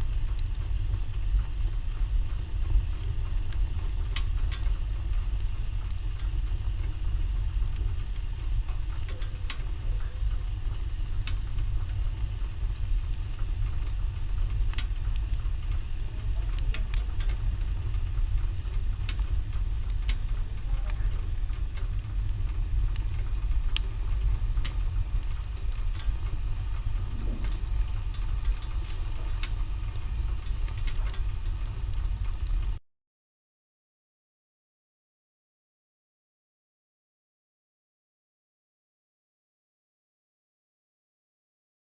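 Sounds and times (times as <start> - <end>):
wood fire crackling: 0.0 - 32.8.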